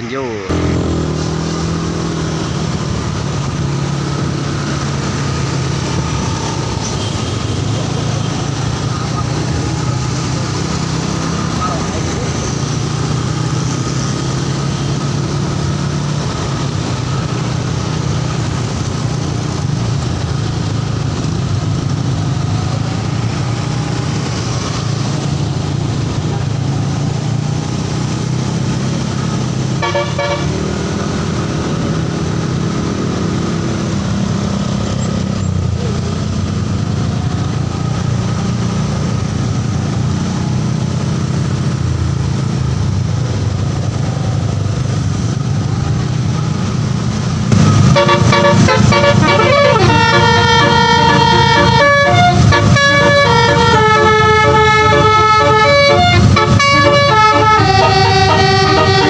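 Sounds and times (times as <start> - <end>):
passing road traffic: 0.0 - 59.0
vehicle horn toot: 29.8 - 30.6, 47.9 - 59.0.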